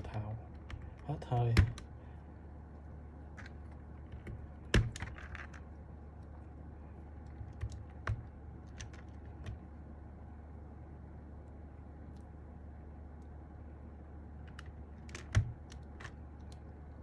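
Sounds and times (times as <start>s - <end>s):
low steady hum: 0.0s - 17.0s
plastic keyboard switch clicks: 14.5s - 16.6s.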